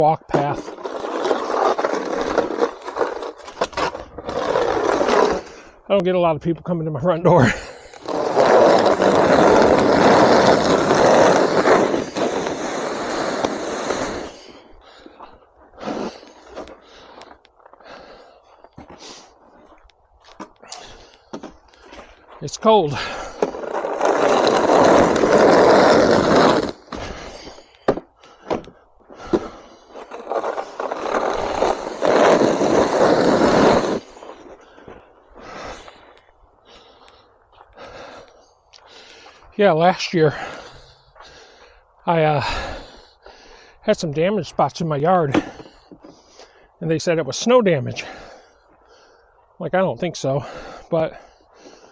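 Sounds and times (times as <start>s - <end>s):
snow shovel scraping icy walkway: 0.0s - 5.8s, 7.2s - 17.2s, 18.9s - 19.8s, 20.6s - 28.4s, 29.2s - 36.1s, 38.9s - 43.0s, 43.9s - 49.1s.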